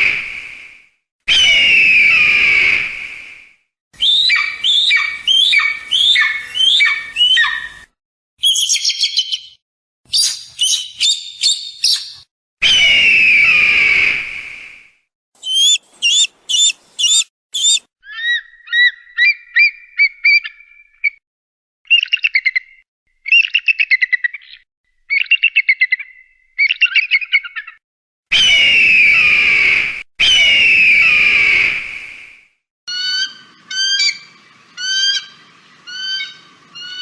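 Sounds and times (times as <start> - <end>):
eagle screams: 1.3 - 2.8, 4.0 - 7.7, 12.6 - 14.2, 15.4 - 18.4
eagle calls: 4.0 - 7.8, 15.4 - 20.6
eagle high-pitched chattering: 15.4 - 17.8.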